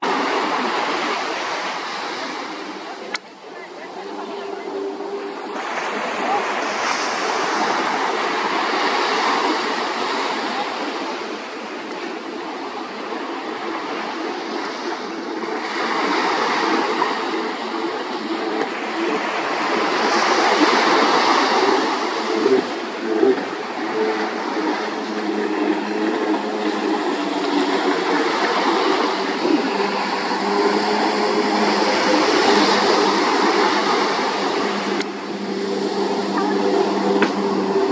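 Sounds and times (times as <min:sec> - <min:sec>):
jet ski motor: 0:00.0 - 0:37.9
water spray rushing: 0:14.2 - 0:37.9.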